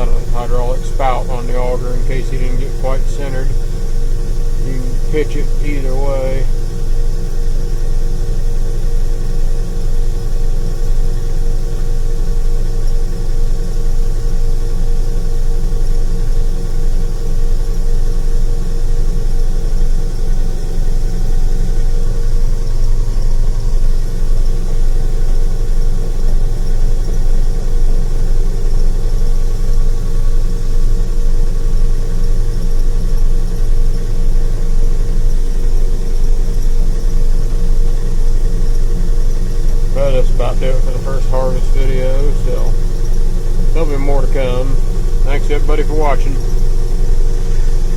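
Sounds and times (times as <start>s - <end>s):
tractor diesel engine under load: 0.0s - 6.9s, 39.0s - 47.9s.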